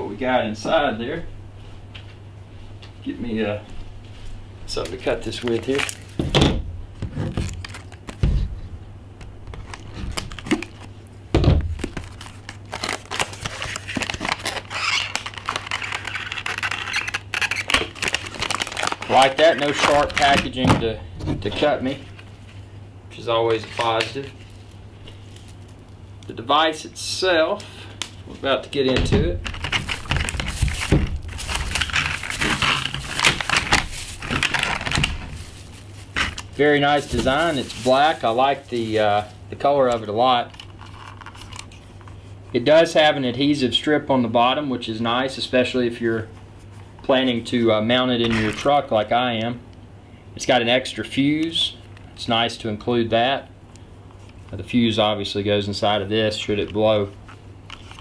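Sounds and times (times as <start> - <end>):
packaging rustling and crinkling: 4.8 - 6.4, 7.0 - 8.6, 9.4 - 11.0, 11.6 - 20.7, 23.5 - 26.0, 29.3 - 42.3, 57.0 - 58.0.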